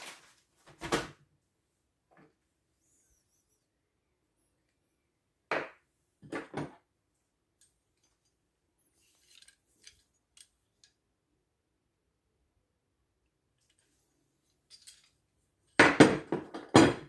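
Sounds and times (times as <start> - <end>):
soft rustle: 7.1 - 11.0.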